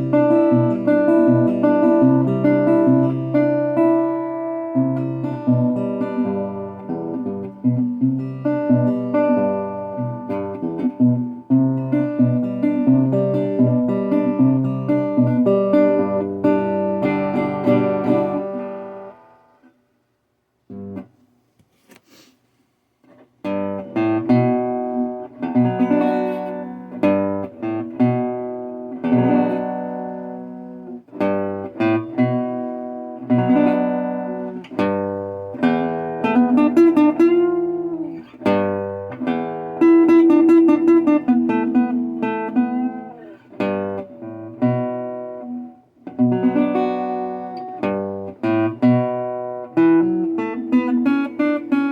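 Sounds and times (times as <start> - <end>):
resonator guitar playing: 0.0 - 19.7, 23.4 - 51.9
faint taps: 21.5 - 22.1.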